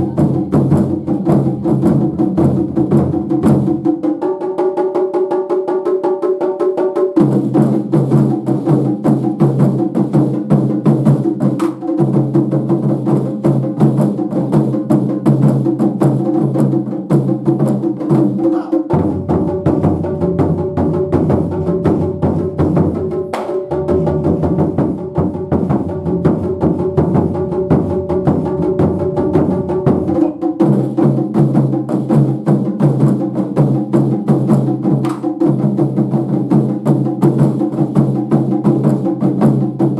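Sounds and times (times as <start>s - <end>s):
taiko drums: 0.0s - 39.9s.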